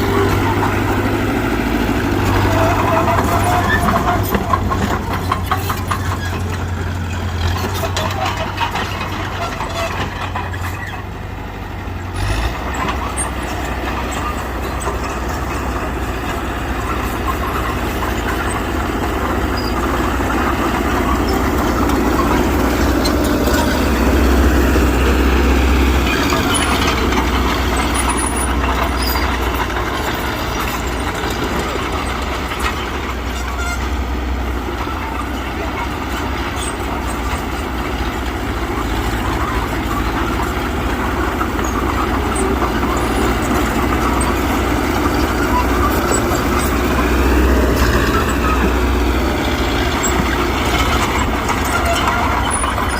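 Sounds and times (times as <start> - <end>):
diesel engine of heavy machinery: 0.0 - 52.9.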